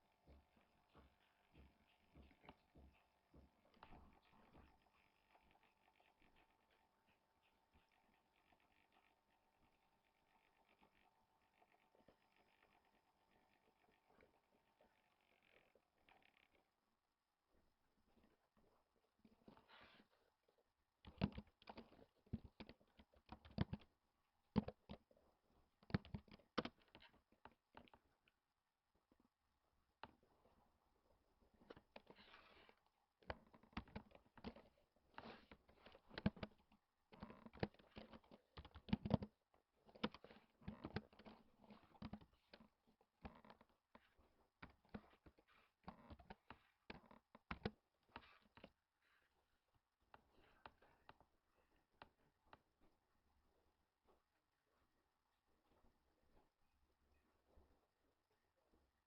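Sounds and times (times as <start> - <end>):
typing on keyboard: 21.1 - 23.9, 24.5 - 25.1, 25.8 - 27.1, 33.2 - 34.7, 35.8 - 36.6, 37.2 - 42.6
keyboard typing clicks: 37.2 - 39.3.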